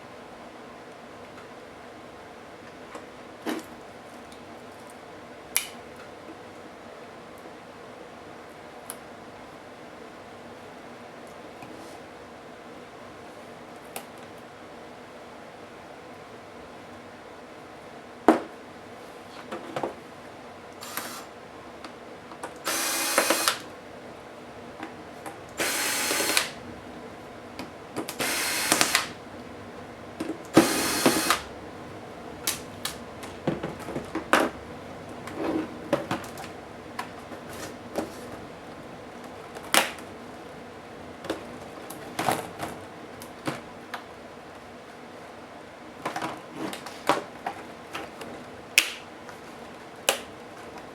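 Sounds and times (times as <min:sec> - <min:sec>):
electric screwdriver running: 0:20.8 - 0:21.3, 0:22.6 - 0:23.7, 0:25.6 - 0:26.6, 0:28.1 - 0:29.2, 0:30.5 - 0:31.5.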